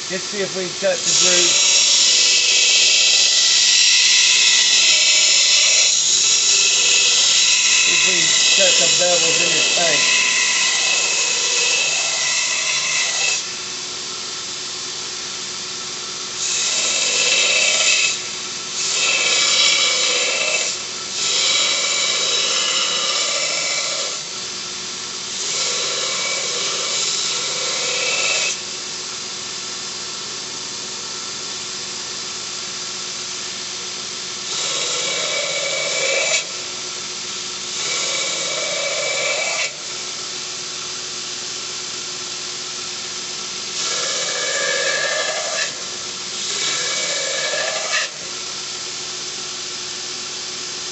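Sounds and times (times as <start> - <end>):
metal grinding on sander belt: 0.0 - 13.6, 16.4 - 24.3, 25.3 - 28.6, 34.4 - 36.6, 37.7 - 39.9, 43.7 - 48.3
belt sander running: 0.0 - 14.3.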